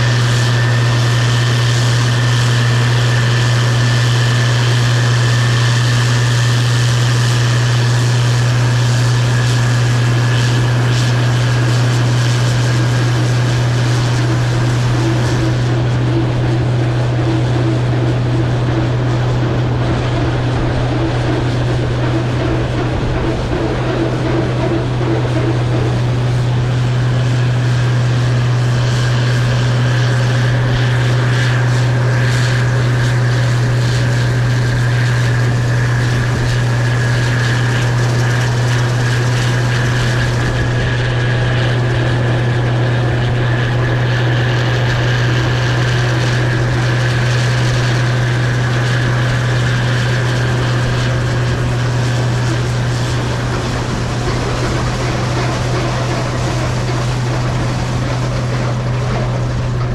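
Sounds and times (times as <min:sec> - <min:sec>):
combine harvester engine drone: 0:00.0 - 0:59.9
faint mechanical whine: 0:00.0 - 0:59.9.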